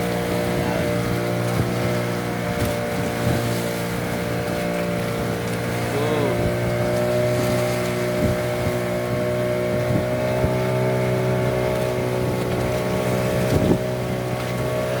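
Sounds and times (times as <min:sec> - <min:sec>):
boat motor running: 0:00.0 - 0:15.0.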